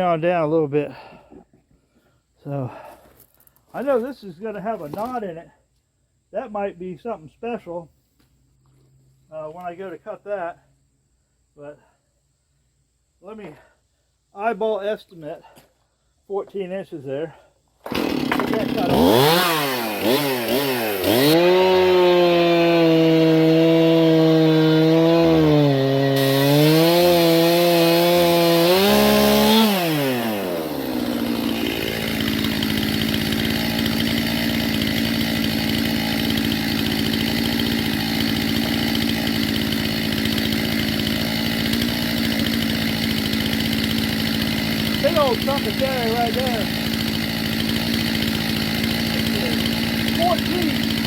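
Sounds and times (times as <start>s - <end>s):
chainsaw cutting log: 4.8s - 5.2s, 17.8s - 51.0s
chainsaw idling: 17.8s - 51.0s.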